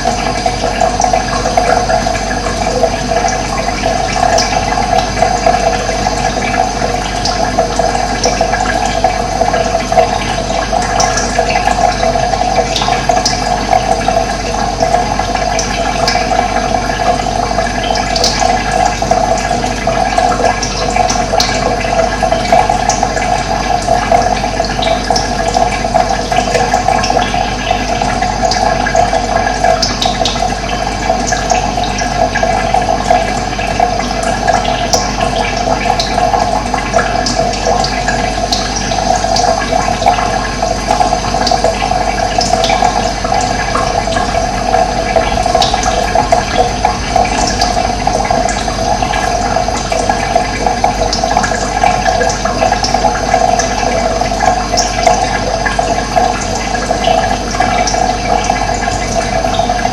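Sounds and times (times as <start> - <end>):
water rushing: 32.9 - 59.9.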